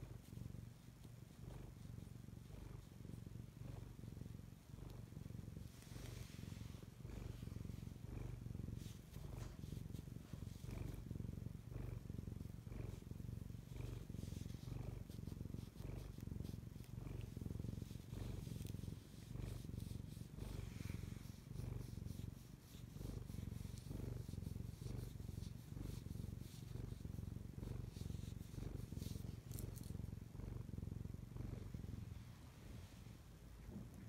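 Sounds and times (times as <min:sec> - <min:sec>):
cat purring: 0:00.0 - 0:34.0.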